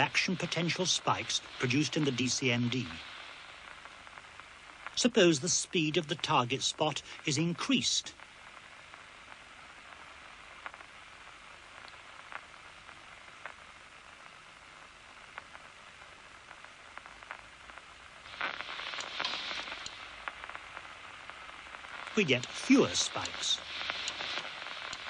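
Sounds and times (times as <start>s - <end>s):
steady hiss: 0.0s - 25.0s
nerve spike clicks and crackling: 16.9s - 25.0s.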